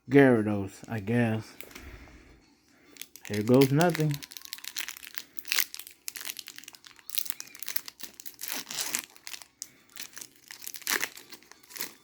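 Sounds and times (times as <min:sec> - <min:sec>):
foil wrapper crinkling and tearing: 0:02.9 - 0:12.0.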